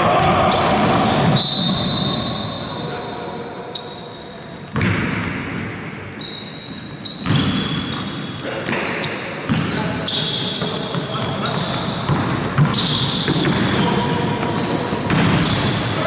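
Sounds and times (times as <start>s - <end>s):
sneakers squeaking on court: 0.3s - 16.0s
basketball bouncing: 7.2s - 8.0s, 8.7s - 9.8s, 12.0s - 13.8s, 14.4s - 15.8s
players' voices: 8.4s - 16.0s.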